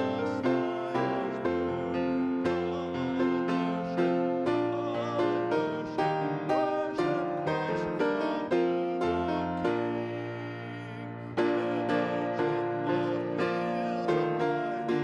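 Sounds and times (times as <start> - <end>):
piano chords: 0.0 - 15.0.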